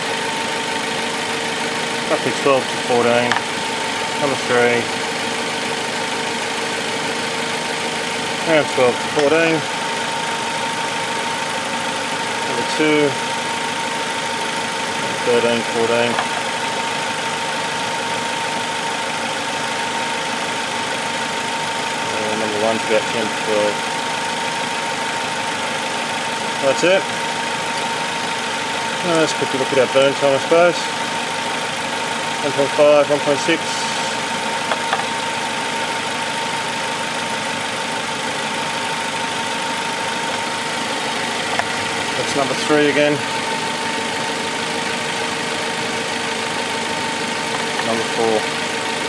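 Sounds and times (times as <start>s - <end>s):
car engine idling: 0.0s - 49.0s.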